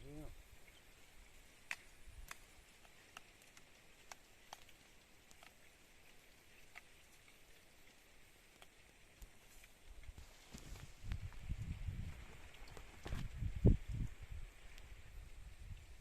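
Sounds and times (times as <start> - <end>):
faint sharp clicks: 1.6 - 10.2.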